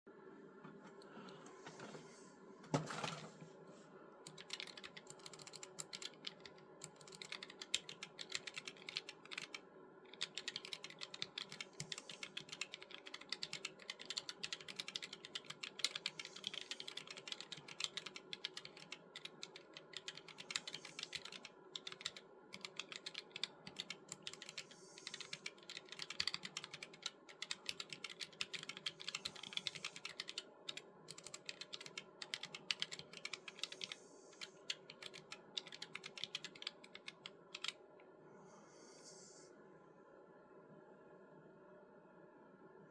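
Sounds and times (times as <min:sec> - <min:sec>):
fast keyboard typing: 0:04.3 - 0:37.8.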